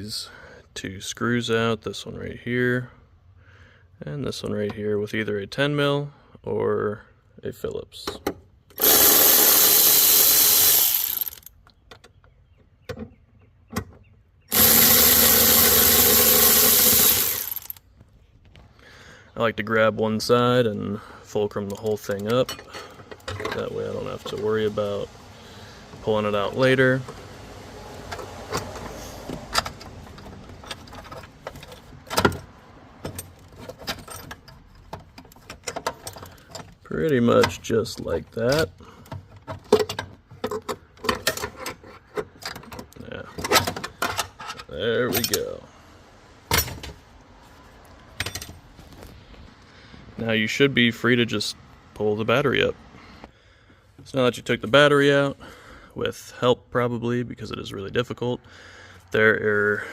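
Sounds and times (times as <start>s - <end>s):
tools clicking and clinking: 8.7s - 12.1s, 14.5s - 17.8s, 39.1s - 45.5s, 48.2s - 48.6s
power tool spinning out screws: 8.8s - 11.5s, 14.5s - 17.8s.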